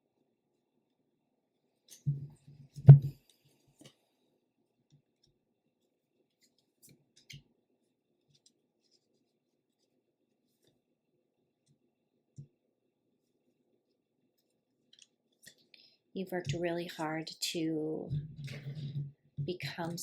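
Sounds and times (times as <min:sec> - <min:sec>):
soft knocks on a table: 0:02.1 - 0:03.2.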